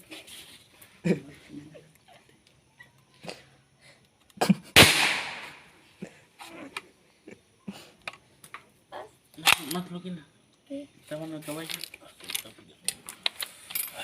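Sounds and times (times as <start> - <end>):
rifle shot: 4.8 - 5.7.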